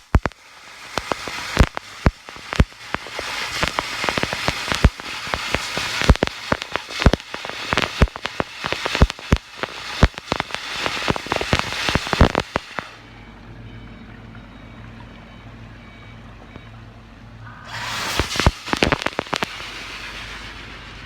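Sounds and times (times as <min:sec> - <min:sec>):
water spray spattering on screen: 0:00.0 - 0:13.0, 0:17.7 - 0:21.0
motor hum: 0:00.0 - 0:21.0.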